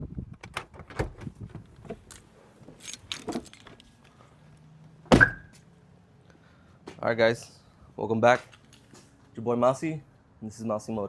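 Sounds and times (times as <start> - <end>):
light clinking and rattling: 1.9 - 4.2, 8.4 - 9.2.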